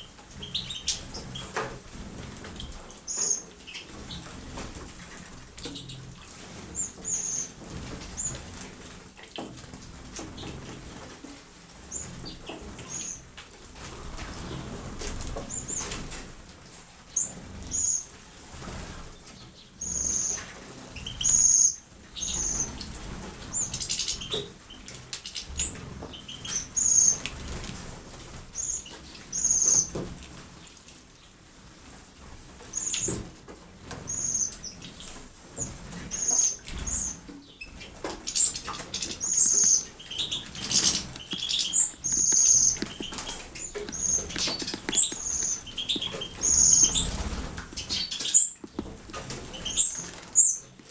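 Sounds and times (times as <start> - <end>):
wings fluttering and splashing water: 0.0 - 50.9
high-pitched bird chirps: 38.3 - 47.1.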